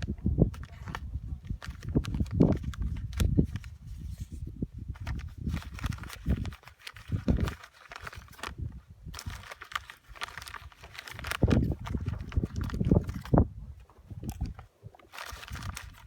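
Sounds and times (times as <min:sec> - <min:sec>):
wind buffeting microphone: 0:00.0 - 0:16.0
clicks and rustling: 0:05.0 - 0:16.0.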